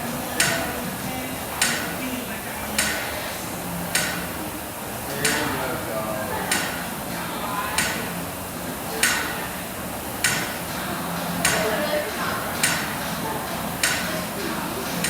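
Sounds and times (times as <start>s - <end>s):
background music with sharp beat: 0.0s - 4.4s, 8.9s - 15.0s
room noise: 0.0s - 15.0s.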